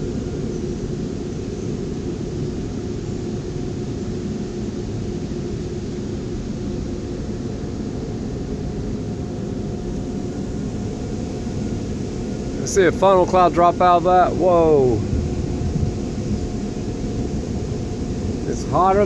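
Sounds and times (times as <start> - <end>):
faint steady hum: 0.0 - 19.0
gusty wind on microphone: 0.0 - 19.0.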